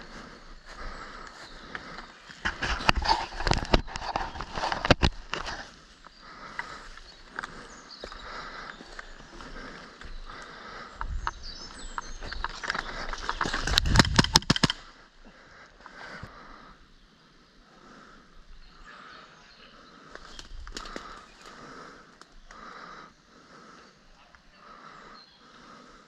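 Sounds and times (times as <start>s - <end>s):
footsteps on rough ground: 0.0s - 14.9s
sharp clicks: 10.3s - 15.0s.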